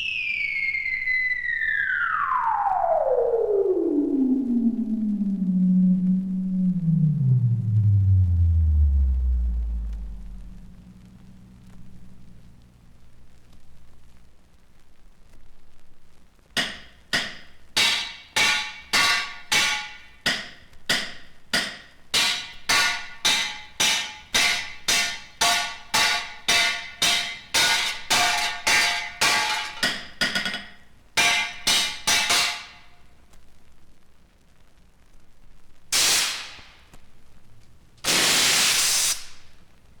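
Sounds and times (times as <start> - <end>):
ringing metallic strikes: 16.6 - 33.0.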